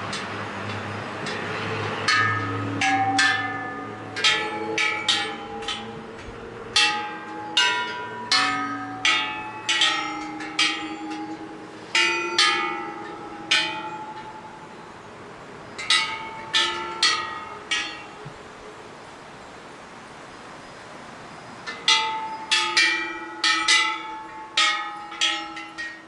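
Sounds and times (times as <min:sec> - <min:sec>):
temple bells struck: 0:02.0 - 0:14.8, 0:15.8 - 0:18.3, 0:21.7 - 0:26.0.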